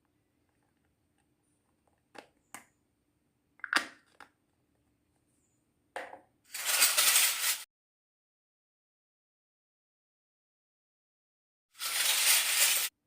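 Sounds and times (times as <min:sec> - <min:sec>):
crinkly rustling: 0:11.8 - 0:12.9.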